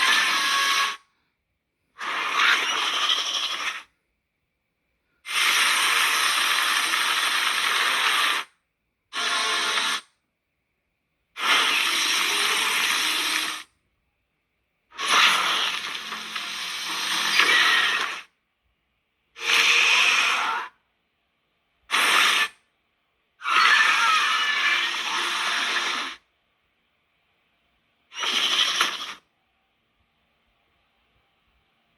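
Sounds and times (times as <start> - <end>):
rasping monster creature sounds: 23.4 - 26.2.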